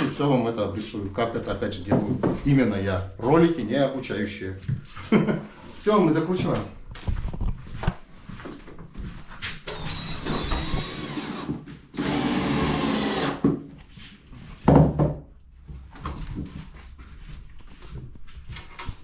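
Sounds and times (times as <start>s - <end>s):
power driver driving screws: 9.7s - 13.4s.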